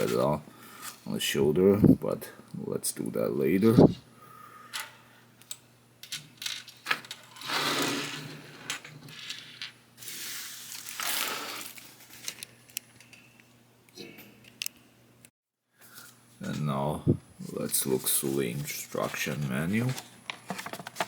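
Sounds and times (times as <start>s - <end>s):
packaging rustling: 17.7s - 21.0s.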